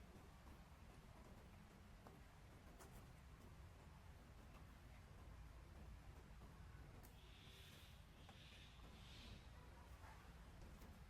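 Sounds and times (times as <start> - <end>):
faint background hiss: 0.0 - 11.0
soft breathy hiss: 7.0 - 10.3.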